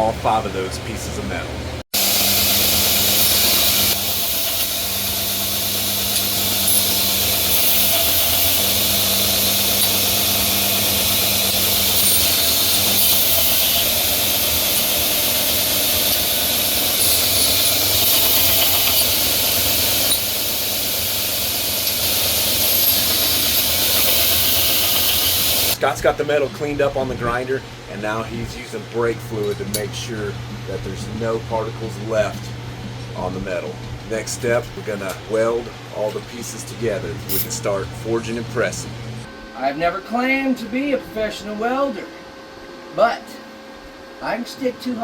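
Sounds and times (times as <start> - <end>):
grinder grinding steel: 2.0 - 25.8, 34.4 - 39.3.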